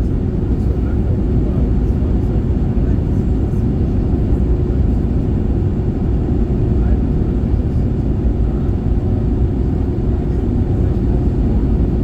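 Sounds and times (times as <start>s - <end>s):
low rumble of jet engines: 0.0s - 12.0s.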